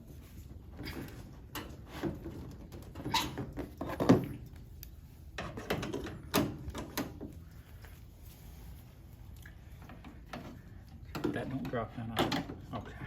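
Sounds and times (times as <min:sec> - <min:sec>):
hardware knocking and rustling: 0:05.3 - 0:07.4.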